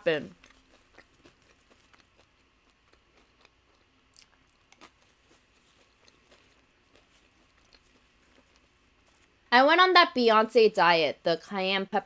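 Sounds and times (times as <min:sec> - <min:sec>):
chewing chips crunches: 0:00.3 - 0:09.5.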